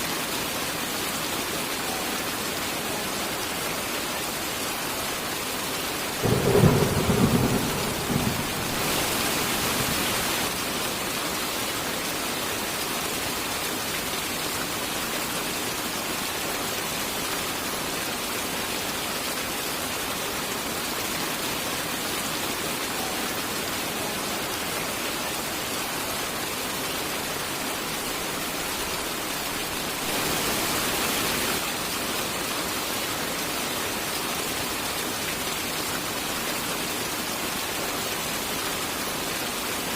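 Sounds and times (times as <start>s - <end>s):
heavy rain: 0.0s - 39.9s
thunder rumbling: 6.2s - 10.6s.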